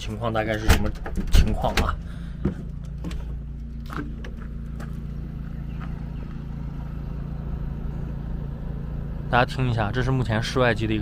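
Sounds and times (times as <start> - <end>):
knocks and footsteps: 0.0 - 7.1
distant generator running: 0.1 - 11.0.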